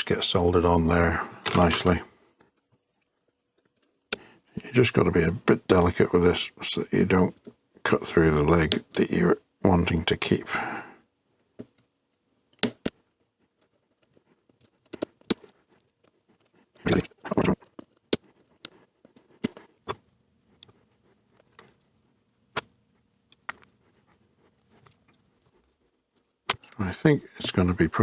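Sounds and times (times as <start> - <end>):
cutters snipping wire leads: 8.7 - 9.1.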